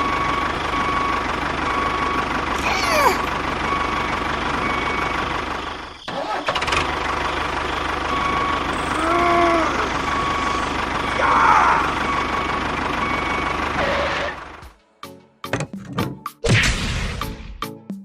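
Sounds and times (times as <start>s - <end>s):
small engine running: 0.5s - 14.6s.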